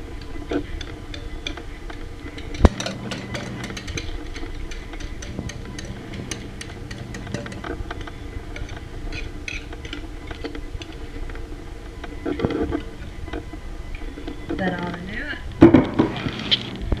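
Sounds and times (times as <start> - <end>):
spoon clattering: 0.0 - 13.3
steady low hum: 0.0 - 17.0
spoon scraping and tapping bowl: 0.2 - 11.4.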